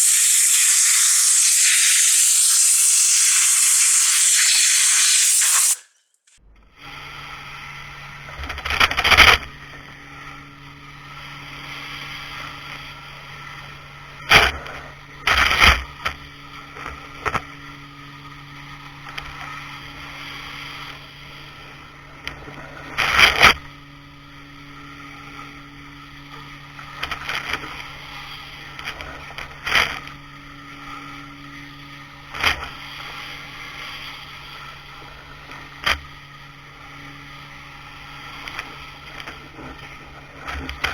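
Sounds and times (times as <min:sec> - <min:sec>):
pressure washer humming: 0:00.0 - 0:05.9
high-pressure water jet hissing: 0:00.0 - 0:06.0.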